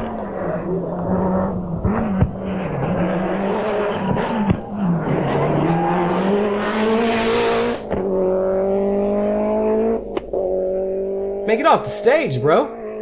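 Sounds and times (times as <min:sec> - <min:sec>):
rally car engine accelerating: 0:00.0 - 0:13.0
high squeal: 0:06.4 - 0:07.9.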